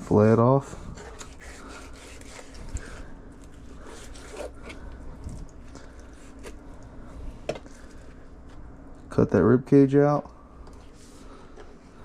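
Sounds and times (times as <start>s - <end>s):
low steady hum: 0.0s - 12.0s
knife rasping cuts: 1.0s - 2.6s, 3.8s - 4.8s.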